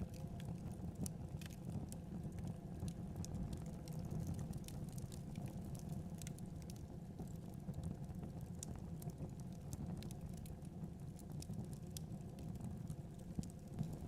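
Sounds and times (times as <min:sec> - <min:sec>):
fire popping and snapping: 0:00.0 - 0:14.0
log fire crackling: 0:00.0 - 0:14.0
low rumble of burning: 0:00.0 - 0:14.0.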